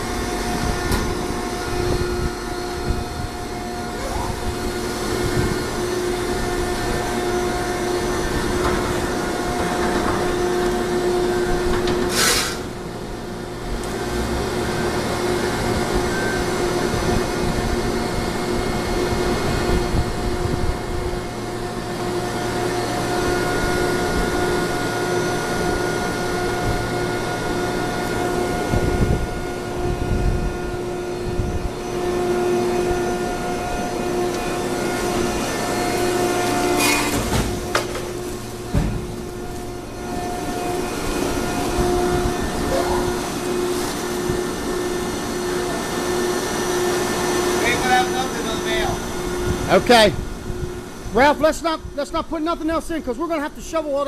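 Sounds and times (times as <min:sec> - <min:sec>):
short burst of hiss: 0:12.1 - 0:12.6
baling machine motor hum: 0:12.7 - 0:51.1.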